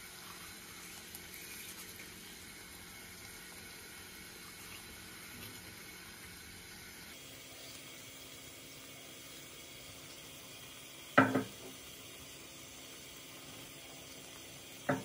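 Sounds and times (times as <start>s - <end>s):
pot cooking hiss: 0.0s - 15.0s
small knock: 11.2s - 11.6s.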